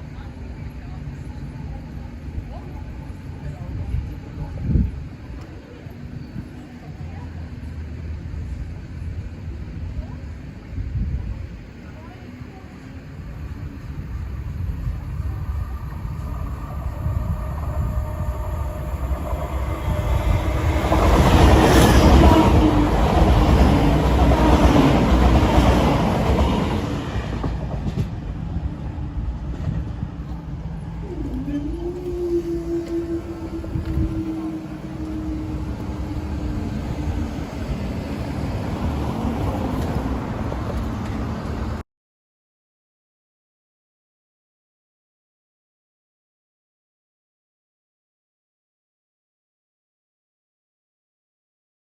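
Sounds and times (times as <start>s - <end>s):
train rumbling: 0.0s - 41.8s.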